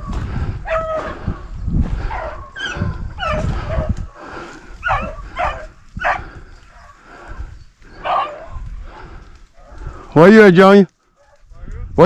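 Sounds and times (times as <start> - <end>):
dogs baying and yelping: 0.6 - 1.4, 2.0 - 4.1, 4.8 - 7.3, 7.9 - 8.6.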